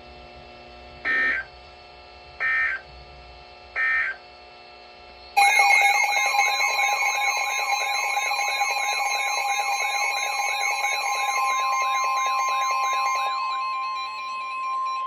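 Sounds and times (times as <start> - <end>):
digital data bursts: 5.4 - 15.0
warbling alert tone: 5.4 - 15.0.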